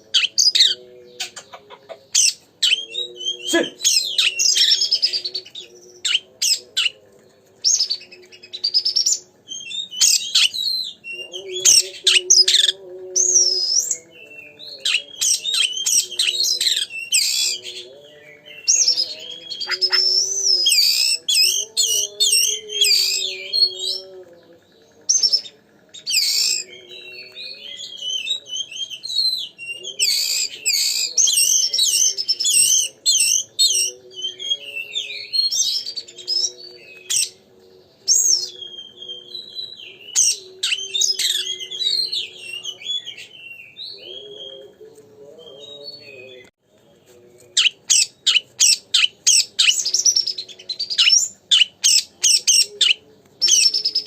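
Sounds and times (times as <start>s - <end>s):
songbird singing whistled phrases: 2.2s - 7.0s, 7.6s - 17.6s, 38.0s - 44.7s, 47.6s - 54.0s.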